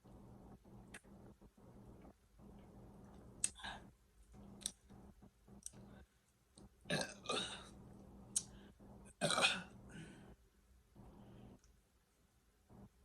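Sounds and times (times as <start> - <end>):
woman burping: 6.9 - 7.7, 9.2 - 9.7.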